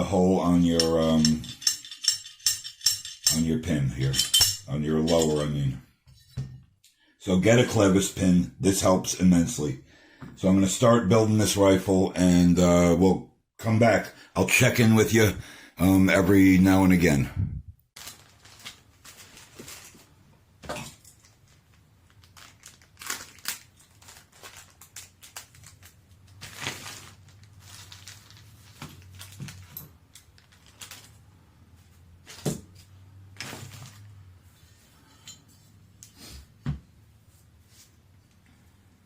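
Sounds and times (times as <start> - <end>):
small metal parts clicking and tapping: 0.8 - 3.4.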